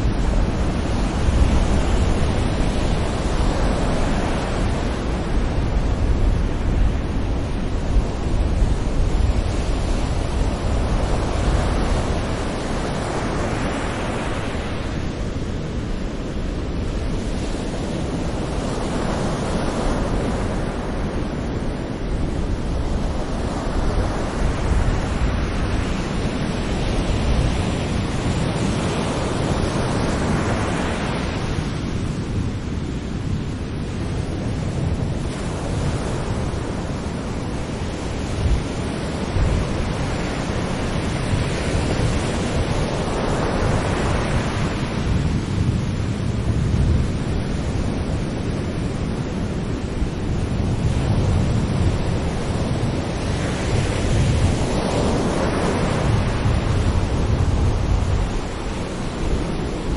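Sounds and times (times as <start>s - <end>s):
low rumble of surf: 0.0s - 59.9s
sea waves breaking on beach: 0.0s - 59.9s.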